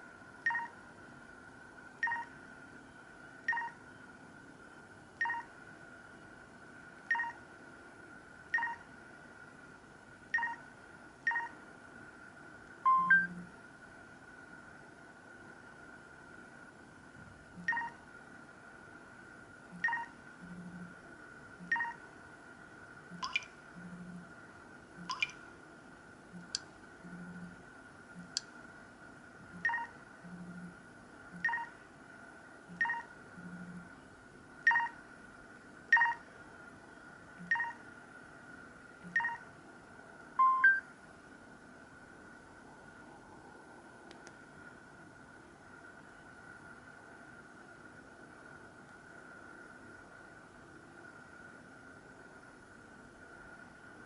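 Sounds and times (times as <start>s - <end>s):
faint high whine: 0.0s - 54.0s
short electronic phone beeps: 2.0s - 2.3s, 7.1s - 7.4s, 12.9s - 13.4s, 34.7s - 35.0s, 35.9s - 36.2s, 40.4s - 40.8s.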